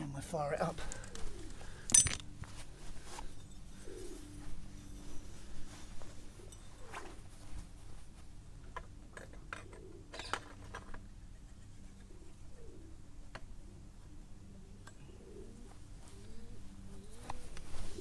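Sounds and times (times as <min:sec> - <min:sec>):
light sharp clicks and clinks: 0:00.8 - 0:02.5
pigeon cooing softly: 0:01.0 - 0:01.8, 0:09.5 - 0:10.5, 0:11.2 - 0:18.0.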